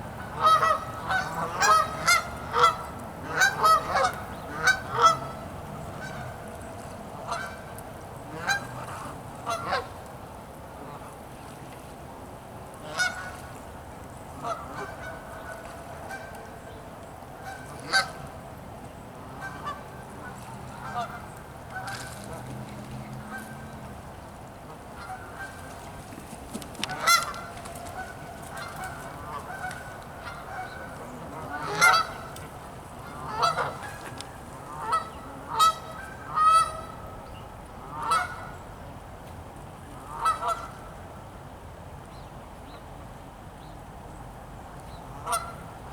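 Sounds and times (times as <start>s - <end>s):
geese honking: 0.3s - 5.4s, 14.4s - 16.3s, 17.4s - 18.2s, 19.3s - 22.0s, 26.9s - 37.1s, 37.8s - 38.6s, 40.1s - 40.8s, 45.2s - 45.6s.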